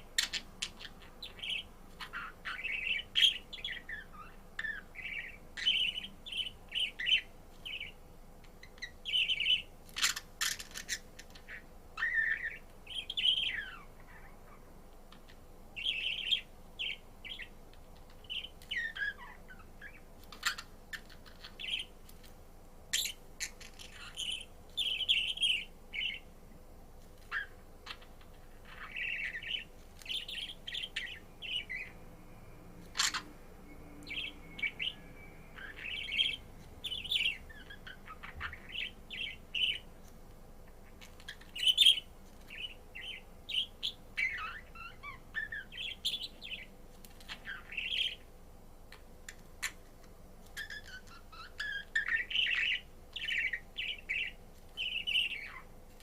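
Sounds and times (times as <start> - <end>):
faint steady hum: 0.0 - 56.0
budgerigar chirping and warbling: 0.2 - 7.9, 8.6 - 14.6, 18.2 - 21.9, 32.9 - 33.4, 35.6 - 39.8, 40.9 - 46.7, 47.3 - 48.2, 50.6 - 55.7.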